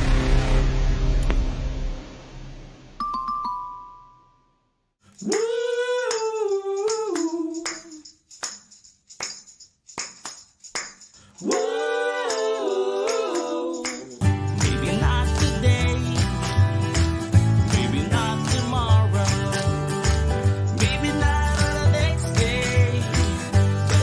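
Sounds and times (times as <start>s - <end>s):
high chime-like tone: 3.0s - 4.6s
person singing: 5.2s - 8.0s, 11.4s - 16.6s, 17.6s - 24.0s
sharp percussive taps: 7.7s - 11.7s, 13.9s - 24.0s.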